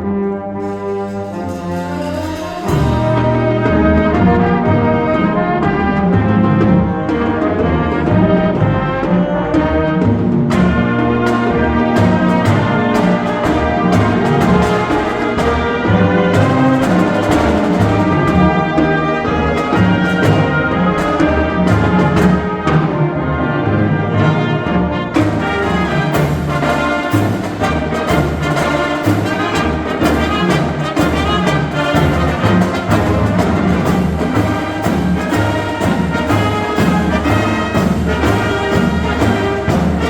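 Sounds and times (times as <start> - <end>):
marching band playing: 0.0 - 40.0
sharp percussion hits: 0.5 - 7.4, 25.1 - 40.0.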